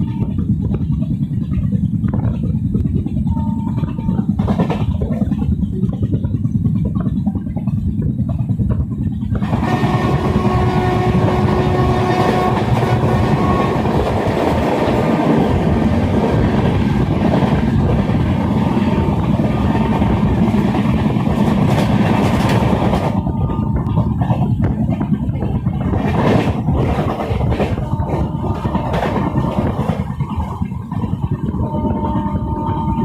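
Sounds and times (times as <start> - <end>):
train horn: 0.0 - 0.5, 3.3 - 4.8, 9.4 - 24.7, 26.0 - 33.0
train wheels clattering on rails: 0.0 - 33.0.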